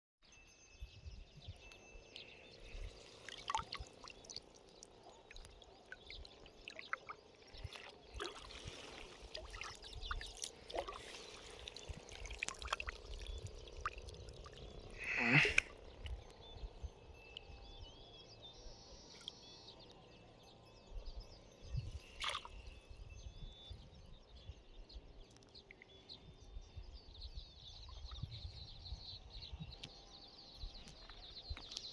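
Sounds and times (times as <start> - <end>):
water splashing and trickling: 2.1 - 16.4, 21.7 - 23.0.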